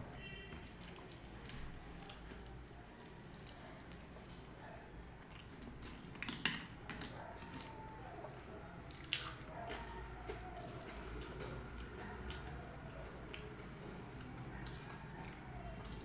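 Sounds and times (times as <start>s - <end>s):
person eating wet food: 8.8s - 16.0s.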